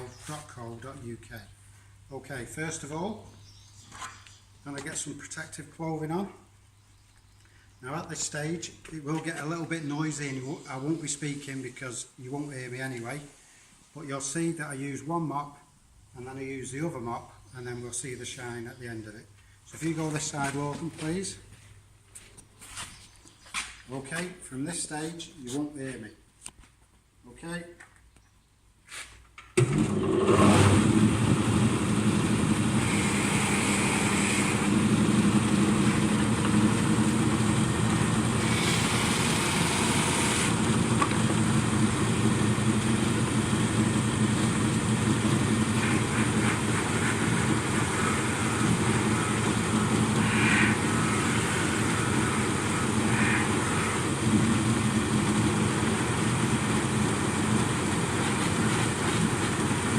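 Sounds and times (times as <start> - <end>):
polishing machine running: 29.6 - 59.9
hiss of wood buffed on mop: 45.3 - 54.3.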